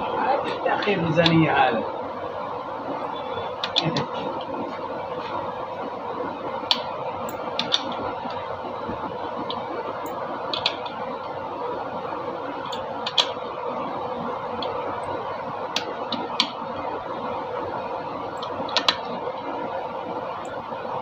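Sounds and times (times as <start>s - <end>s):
steady two-tone hum: 0.0s - 21.0s.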